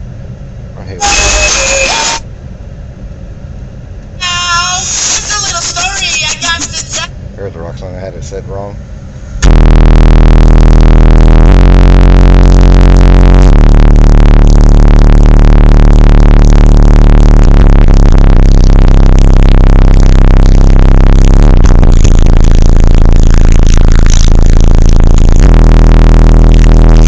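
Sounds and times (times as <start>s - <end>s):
deep bass notes: 9.4s - 27.0s.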